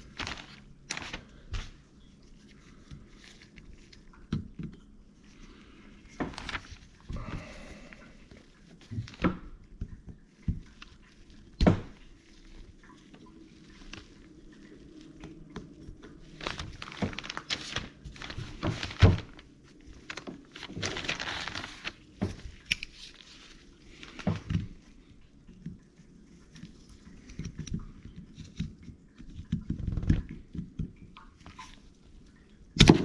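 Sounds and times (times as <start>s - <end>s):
scraping and rustling: 0.0s - 4.3s, 5.1s - 9.5s, 10.4s - 25.0s.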